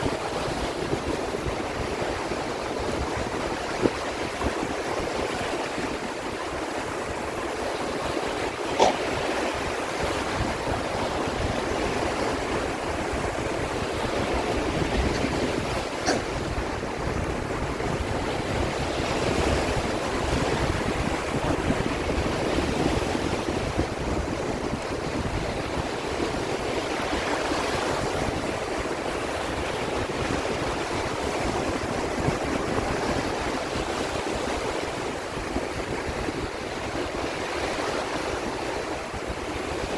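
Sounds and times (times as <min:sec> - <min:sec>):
sea waves washing in: 0:00.0 - 0:39.9.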